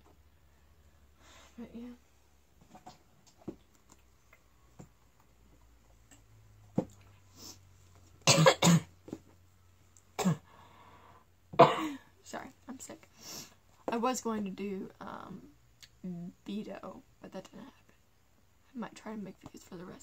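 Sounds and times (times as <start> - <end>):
person coughing: 8.3 - 8.9, 10.2 - 10.5, 11.6 - 12.1.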